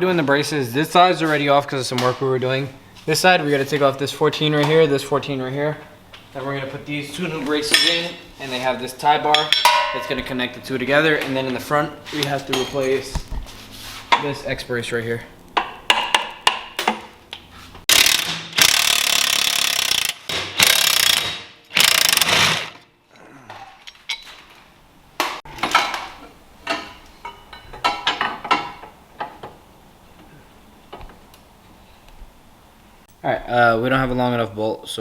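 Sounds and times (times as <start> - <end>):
tools and metal parts tapping: 9.3 - 10.2, 23.8 - 24.6, 25.6 - 29.5
ratchet wrench clicking: 17.9 - 22.6.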